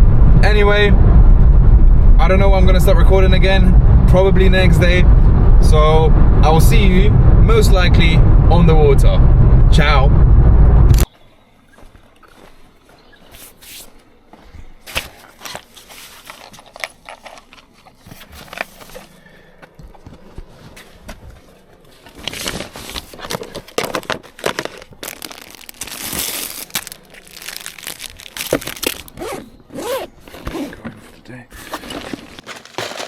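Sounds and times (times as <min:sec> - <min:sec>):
rustling and crinkling: 0:11.7 - 0:33.0.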